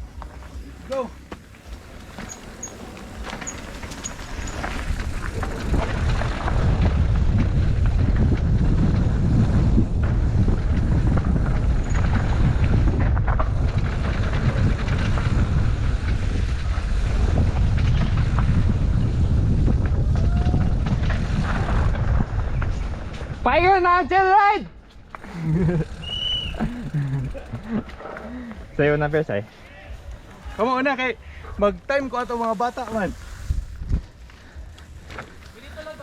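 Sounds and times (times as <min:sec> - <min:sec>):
wind buffeting microphone: 0:03.2 - 0:24.2, 0:32.8 - 0:36.0.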